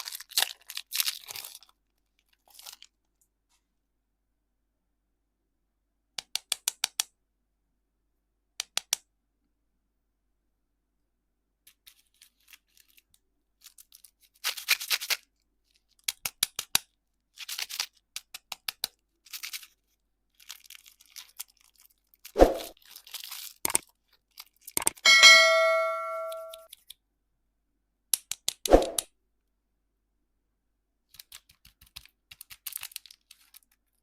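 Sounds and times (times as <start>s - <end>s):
candy wrapper crinkling: 0.0s - 3.1s, 11.7s - 25.0s, 31.1s - 34.0s
struck ringing ding: 25.1s - 26.6s.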